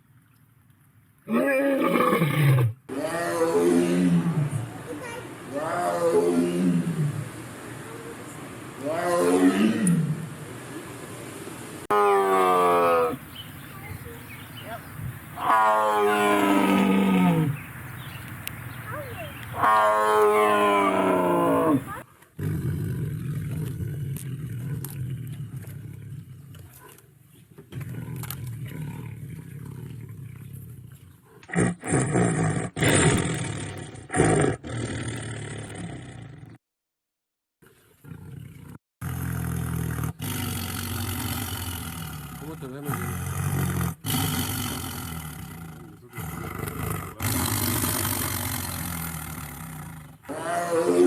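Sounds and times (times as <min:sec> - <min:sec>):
tiger roaring: 0:01.3 - 0:04.9, 0:05.5 - 0:07.3, 0:08.8 - 0:10.3, 0:11.9 - 0:13.2, 0:15.4 - 0:17.7, 0:19.5 - 0:27.0, 0:27.7 - 0:36.6, 0:37.6 - 0:51.0
tiger rumbling low: 0:01.3 - 0:07.5, 0:08.8 - 0:10.4, 0:11.9 - 0:18.2, 0:18.9 - 0:27.0, 0:27.6 - 0:36.6, 0:37.6 - 0:51.0.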